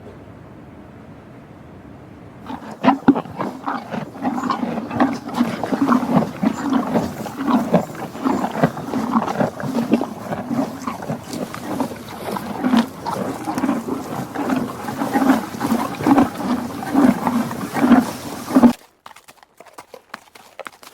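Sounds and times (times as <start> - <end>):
horse snorting sounds: 2.5 - 18.8.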